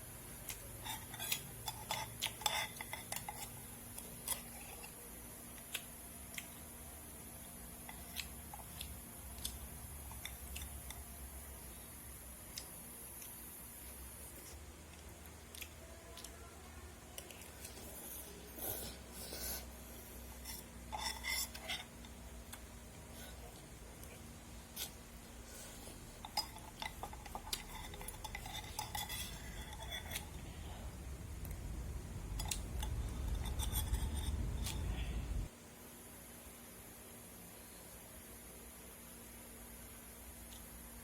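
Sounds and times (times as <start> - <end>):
utensils clinking on dishes: 26.2 - 30.3.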